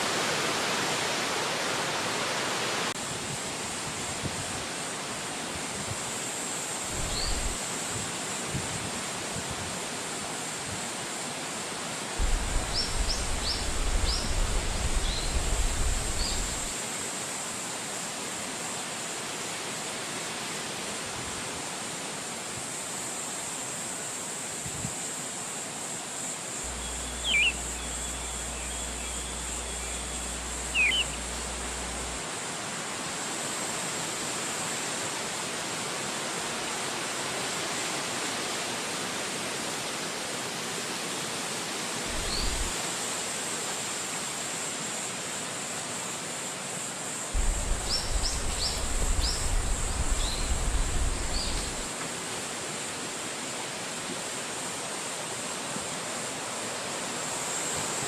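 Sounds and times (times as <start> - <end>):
wind rushing through trees: 0.0 - 58.0
bird chirps: 7.0 - 7.6, 26.7 - 32.1
low rumbles: 12.2 - 16.7, 26.7 - 32.2, 47.4 - 51.9.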